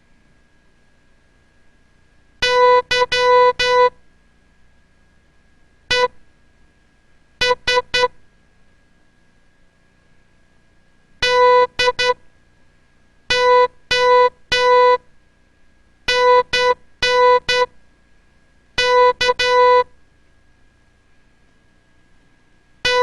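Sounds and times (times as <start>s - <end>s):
morse code beeps: 2.4s - 4.0s, 5.9s - 6.1s, 7.4s - 8.1s, 11.2s - 12.2s, 13.3s - 15.0s, 16.1s - 17.7s, 18.8s - 19.9s.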